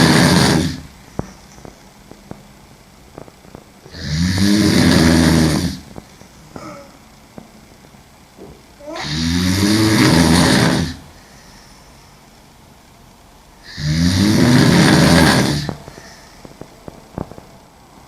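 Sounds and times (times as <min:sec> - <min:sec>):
woman snoring loudly: 0:00.0 - 0:00.9, 0:03.9 - 0:05.9, 0:08.8 - 0:11.2, 0:13.6 - 0:16.2.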